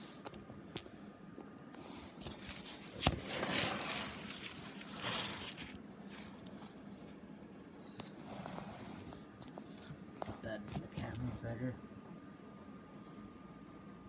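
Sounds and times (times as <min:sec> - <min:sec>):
comic book rustling: 0:01.9 - 0:06.7.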